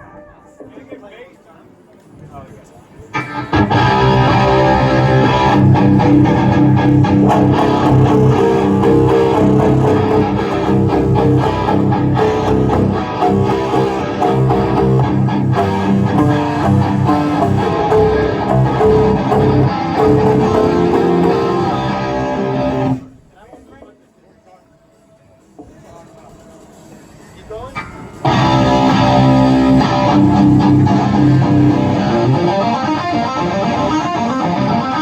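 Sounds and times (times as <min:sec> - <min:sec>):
bass guitar: 0:03.2 - 0:23.0, 0:28.2 - 0:35.0
electric guitar riff: 0:03.2 - 0:23.1, 0:28.2 - 0:35.0
drums: 0:03.2 - 0:23.7, 0:25.4 - 0:35.0.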